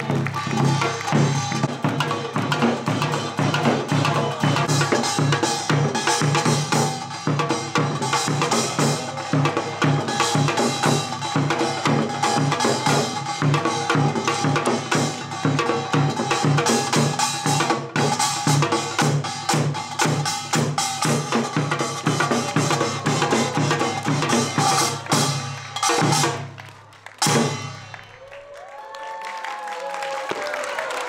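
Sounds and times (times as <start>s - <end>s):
fast percussion music: 0.0s - 28.3s.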